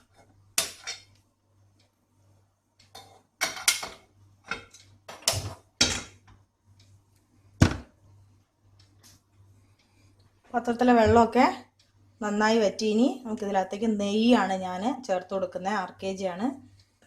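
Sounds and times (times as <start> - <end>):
metal pan clattering on stove: 0.6 - 1.1, 3.0 - 6.2.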